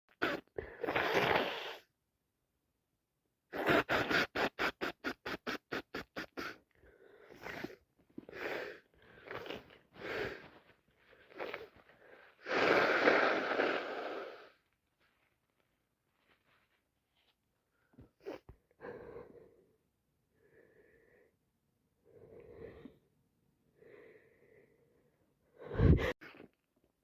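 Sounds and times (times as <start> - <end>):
nose blowing: 0.1 - 1.9, 3.5 - 14.6, 25.6 - 26.5
person sniffing: 0.2 - 1.9, 3.5 - 14.6, 25.6 - 26.4.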